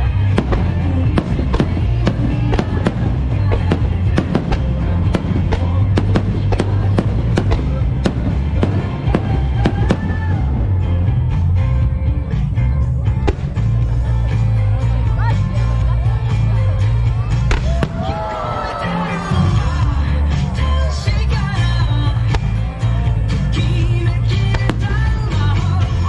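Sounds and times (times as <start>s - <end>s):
fireworks bursting: 0.0s - 10.6s, 24.4s - 26.0s
music with heavy bass: 0.0s - 26.0s.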